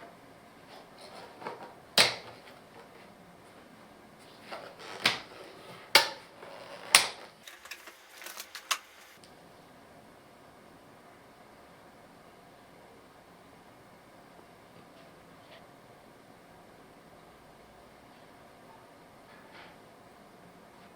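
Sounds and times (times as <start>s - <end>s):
packaging rustling: 4.2s - 9.2s.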